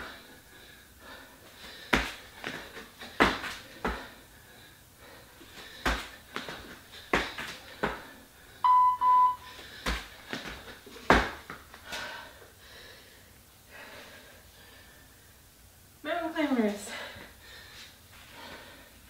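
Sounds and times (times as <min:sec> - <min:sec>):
feet thudding on floor: 0:01.9 - 0:04.1, 0:09.9 - 0:12.0
interval timer beeps: 0:08.6 - 0:09.5.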